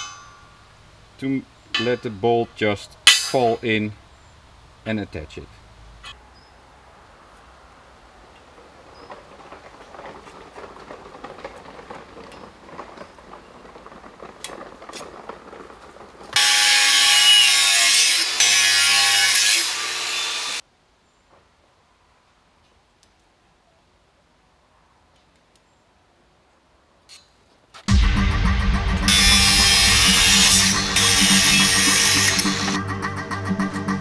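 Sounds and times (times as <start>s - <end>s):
power tool cutting steel: 16.4s - 20.6s, 27.9s - 34.0s.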